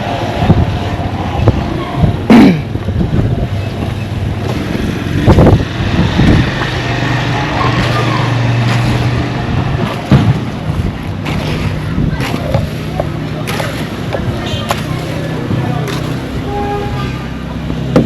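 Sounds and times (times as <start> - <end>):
vehicle engine humming: 0.0 - 18.0.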